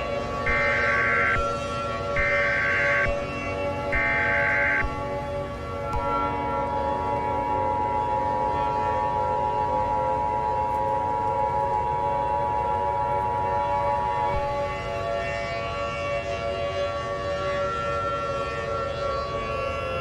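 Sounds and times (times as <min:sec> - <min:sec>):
droning low tones: 0:00.5 - 0:07.6.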